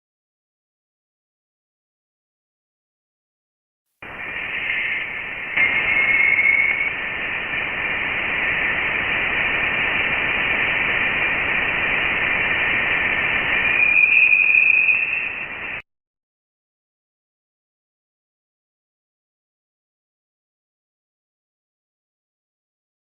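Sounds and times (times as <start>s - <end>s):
eerie static hiss: 4.0s - 15.8s
thin whistling tone: 4.1s - 7.4s, 13.4s - 15.8s
bright tone: 4.2s - 7.3s, 13.3s - 15.8s.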